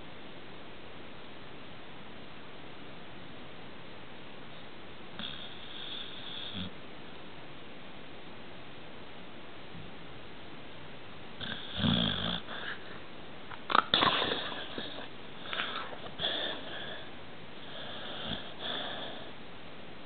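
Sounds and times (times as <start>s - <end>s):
pet sniffing and snorting: 11.4s - 13.0s, 13.6s - 19.3s.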